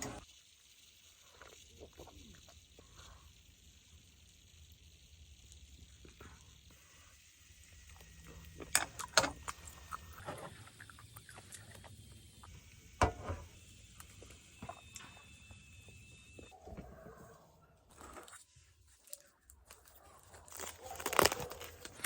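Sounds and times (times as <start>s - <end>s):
small objects clicking and knocking: 17.9s - 22.0s.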